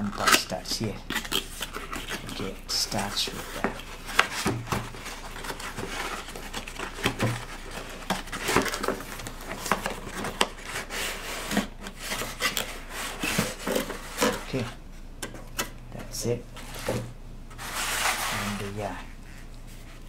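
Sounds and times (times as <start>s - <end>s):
packaging rubbing and scraping: 0.0s - 14.7s, 17.6s - 18.9s.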